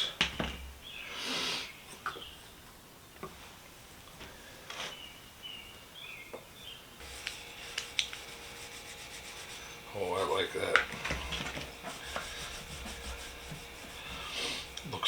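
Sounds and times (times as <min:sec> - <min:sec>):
hand rubbing and scraping: 0:07.0 - 0:15.0.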